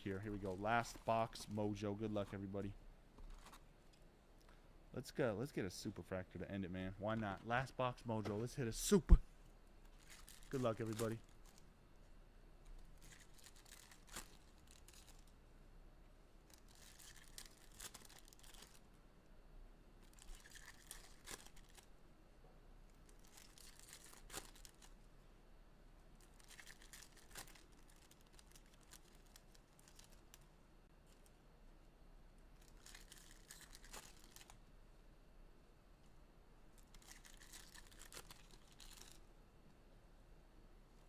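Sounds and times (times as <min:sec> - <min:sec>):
packaging tearing and crinkling: 0:10.0 - 0:11.6, 0:13.0 - 0:15.3, 0:16.5 - 0:18.8, 0:20.1 - 0:21.9, 0:23.0 - 0:24.9, 0:26.3 - 0:30.2, 0:32.6 - 0:34.6, 0:36.9 - 0:39.2.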